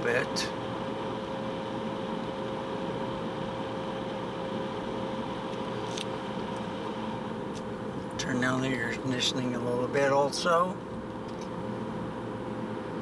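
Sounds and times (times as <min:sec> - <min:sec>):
air-conditioning blower running: 0:00.0 - 0:13.0
steady humming tone: 0:00.0 - 0:13.0.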